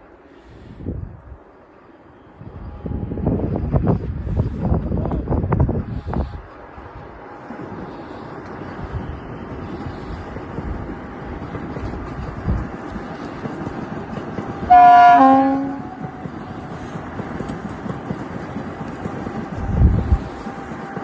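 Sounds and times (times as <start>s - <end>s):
train rumbling: 0.0s - 21.0s
locomotive horn blast: 14.7s - 16.0s.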